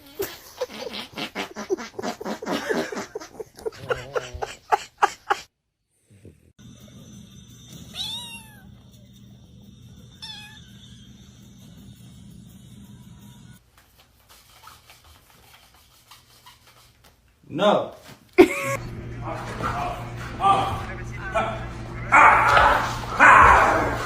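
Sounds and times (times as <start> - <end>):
cat meowing: 7.9 - 8.7, 10.2 - 10.9
cat caterwauling: 10.2 - 11.4
steady low hum: 18.6 - 23.2.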